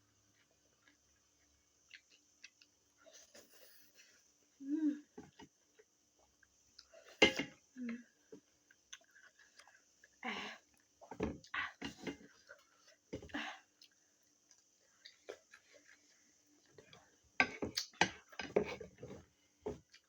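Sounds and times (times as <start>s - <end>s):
slurping and chewing noodles: 8.5s - 20.0s.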